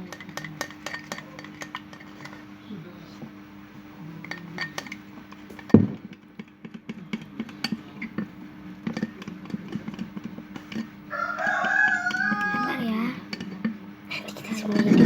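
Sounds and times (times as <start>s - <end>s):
stirrer scraping a container: 0.0s - 2.6s, 4.2s - 15.0s
steady low hum: 0.0s - 15.0s
loud knock: 5.7s - 6.1s.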